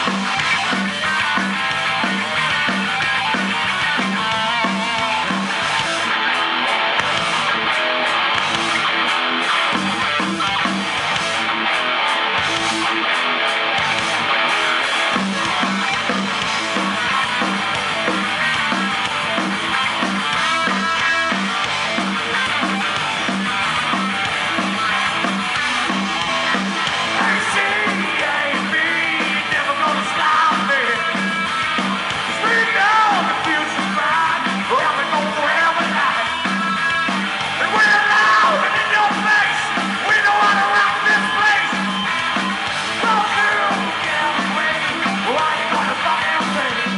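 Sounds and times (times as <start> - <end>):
punk rock band playing: 0.0 - 46.9
shouted vocals: 27.0 - 31.1, 32.3 - 36.4, 37.5 - 46.9.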